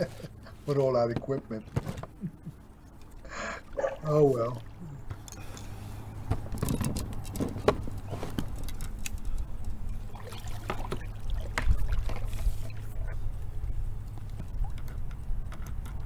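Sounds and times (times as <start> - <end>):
plastic kayak knocks and clicks: 1.1 - 2.2, 6.2 - 9.9, 10.6 - 12.3, 14.2 - 16.0.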